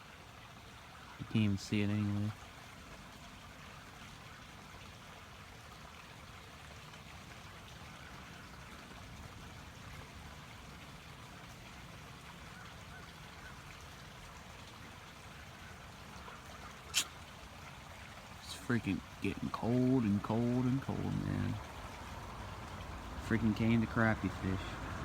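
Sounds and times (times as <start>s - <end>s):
water trickling: 0.0s - 25.0s.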